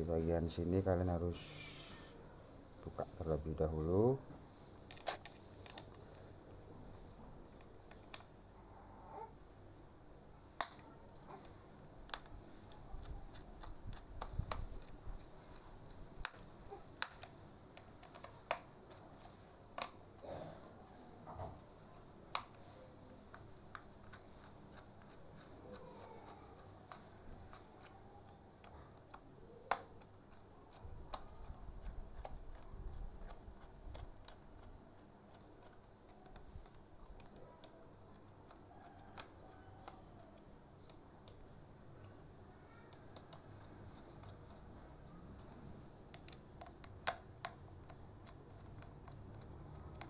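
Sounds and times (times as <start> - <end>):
screwdriver clicking: 42.9 - 44.6, 46.1 - 50.0.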